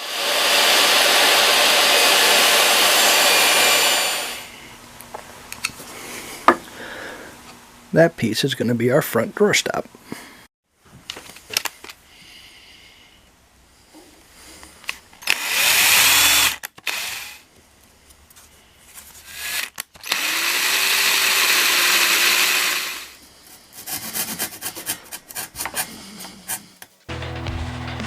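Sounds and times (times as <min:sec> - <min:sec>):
power drill running: 0:00.0 - 0:04.5, 0:15.2 - 0:17.4, 0:19.2 - 0:23.2.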